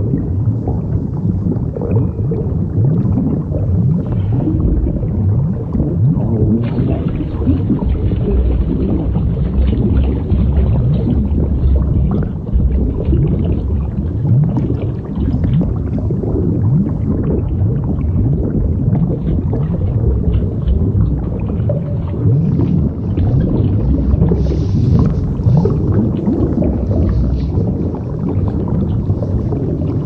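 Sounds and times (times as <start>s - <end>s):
low rumble with creaks and groans: 0.0s - 30.0s.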